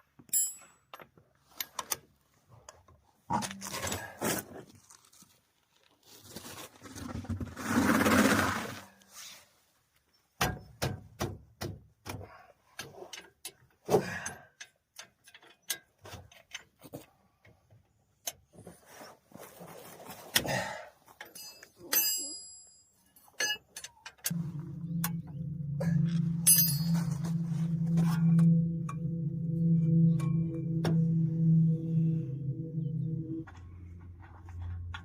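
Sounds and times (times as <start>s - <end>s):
hand tools clinking on metal: 0.3s - 1.7s, 21.2s - 24.4s.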